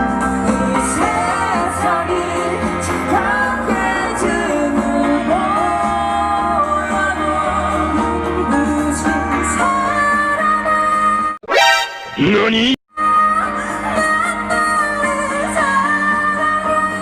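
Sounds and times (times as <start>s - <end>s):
pop music with singing: 0.0s - 17.0s.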